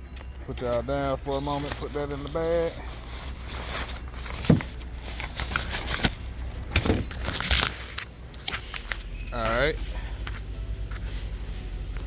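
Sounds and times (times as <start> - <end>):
rustling of packing a bag: 0.6 - 10.0.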